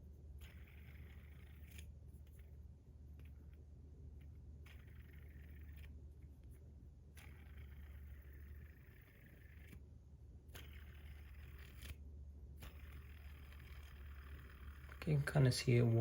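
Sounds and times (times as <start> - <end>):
fidget spinner whirring: 0.0 - 16.0.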